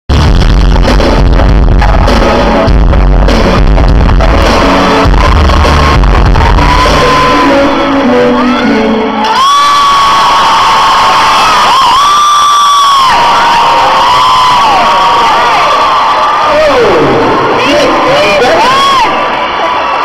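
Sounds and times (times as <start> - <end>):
distorted pop concert music: 0.1 - 20.0
crowd screaming: 4.2 - 20.0
fans screaming high-pitched: 4.3 - 20.0.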